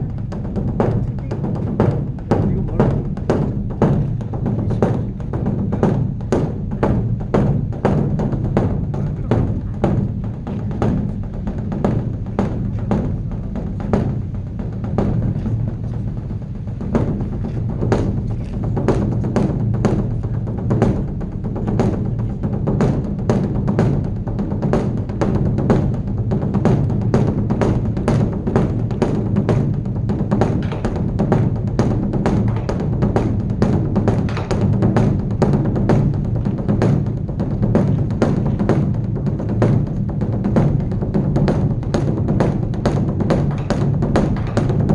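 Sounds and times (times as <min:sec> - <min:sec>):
deep drum strikes: 0:00.0 - 0:44.9.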